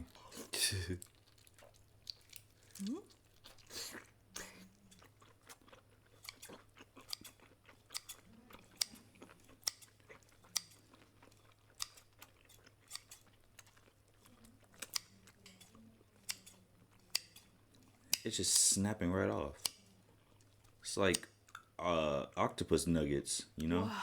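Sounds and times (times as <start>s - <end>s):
close chewing and biting: 0.0s - 18.7s, 19.5s - 21.8s
wet clicks and smacks: 1.0s - 2.8s, 9.6s - 10.8s, 11.6s - 13.7s.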